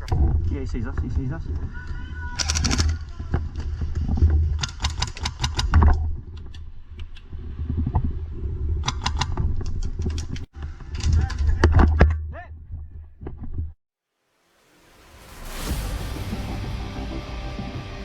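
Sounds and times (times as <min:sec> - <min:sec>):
airsoft rifle bursts: 0:02.4 - 0:03.0
steady low rumble: 0:14.6 - 0:18.0.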